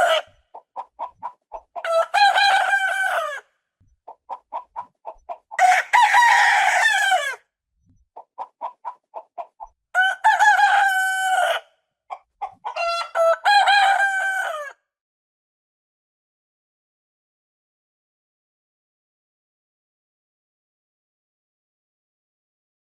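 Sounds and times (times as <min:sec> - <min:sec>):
rooster crowing: 0:00.0 - 0:00.3, 0:01.8 - 0:03.4, 0:05.6 - 0:07.4, 0:10.0 - 0:11.7, 0:12.7 - 0:14.8
short clucks: 0:00.2 - 0:01.9, 0:03.8 - 0:05.6, 0:07.8 - 0:09.8, 0:12.1 - 0:12.8.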